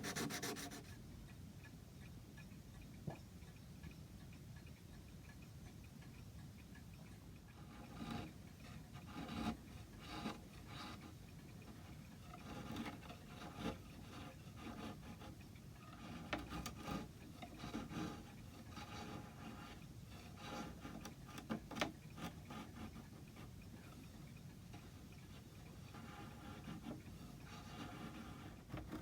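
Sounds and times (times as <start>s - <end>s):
hand tools scraping wood: 0.0s - 0.9s, 7.6s - 24.1s, 24.7s - 29.0s.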